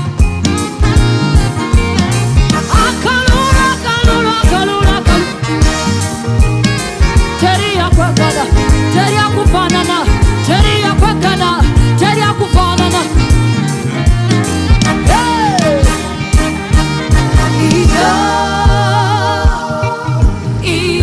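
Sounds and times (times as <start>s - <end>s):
drum kit beat: 0.0s - 20.6s
gospel band playing: 0.0s - 21.0s
person singing melody: 2.5s - 5.9s, 14.8s - 16.6s, 17.2s - 21.0s.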